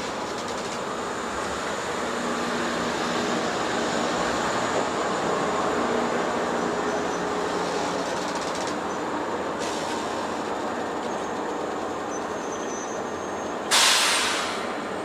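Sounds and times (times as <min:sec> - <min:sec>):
electric train rolling: 0:00.0 - 0:15.0.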